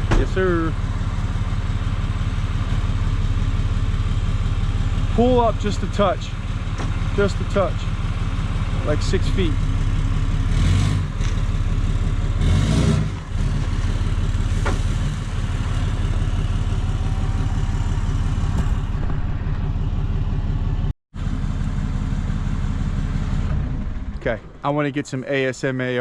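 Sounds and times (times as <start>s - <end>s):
truck engine running: 0.0s - 26.0s.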